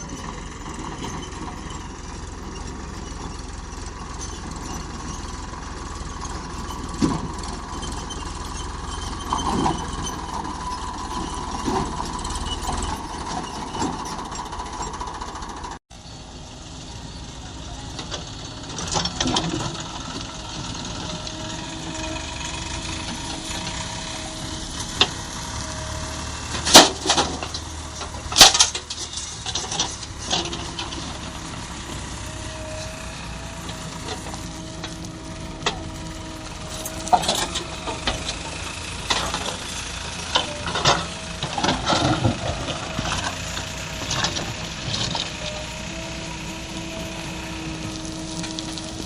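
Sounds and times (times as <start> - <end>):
backhoe loader working: 0.0 - 49.0.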